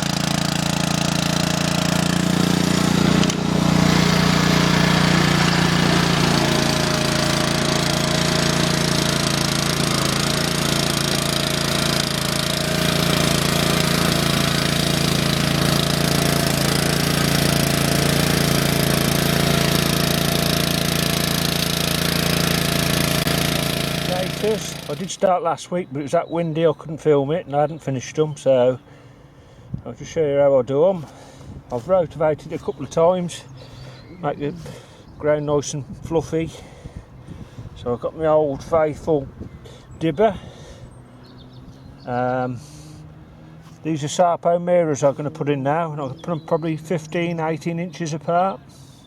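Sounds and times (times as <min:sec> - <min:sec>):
rotovator engine running: 0:00.0 - 0:25.3.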